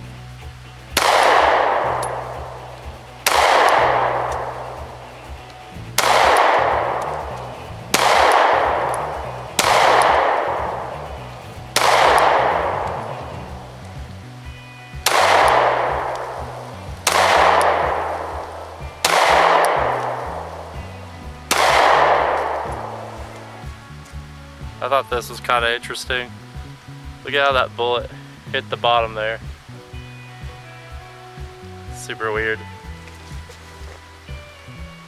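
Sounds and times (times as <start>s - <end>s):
pistol shots with echo: 0.9s - 5.0s, 6.0s - 13.8s, 15.0s - 20.8s, 21.5s - 23.5s.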